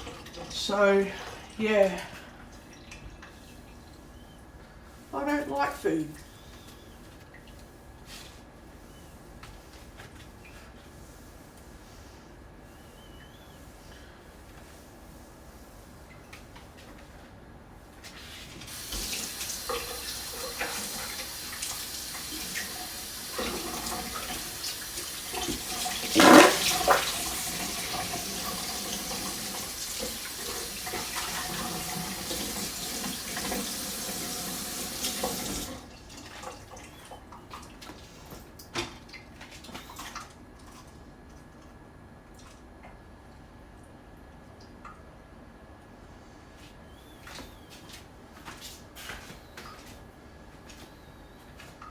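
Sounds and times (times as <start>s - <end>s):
tap running into sink: 25.4s - 30.1s
water splash: 26.2s - 27.2s.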